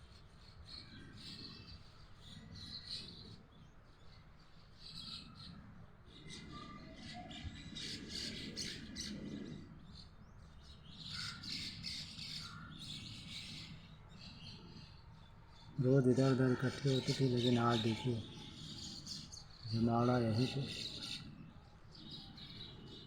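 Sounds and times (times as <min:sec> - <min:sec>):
flock of birds chirping: 0:00.0 - 0:23.0.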